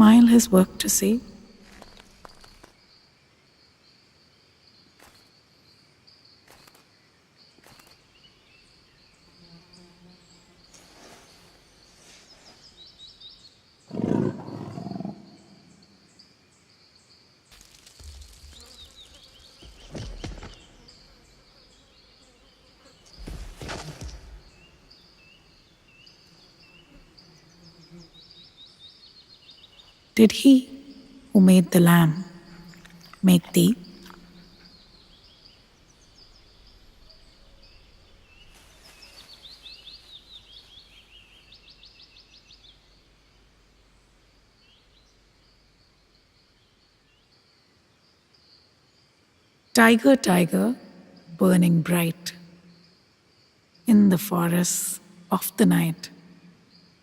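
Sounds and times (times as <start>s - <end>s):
insects droning: 0.0s - 57.0s
tiger roaring: 13.9s - 15.6s
tiger growls: 13.9s - 15.9s.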